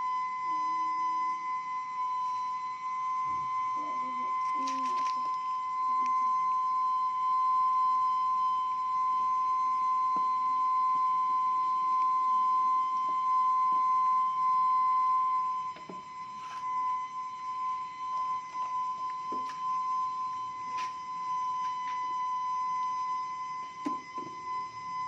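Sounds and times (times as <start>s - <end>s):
high steam whistle: 15.3s - 19.4s.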